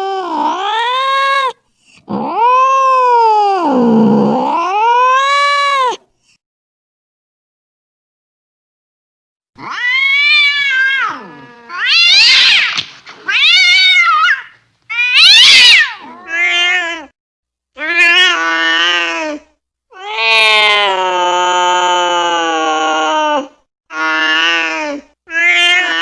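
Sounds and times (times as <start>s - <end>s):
angry cat yowling: 0.0s - 6.0s, 9.6s - 17.2s, 17.8s - 26.0s.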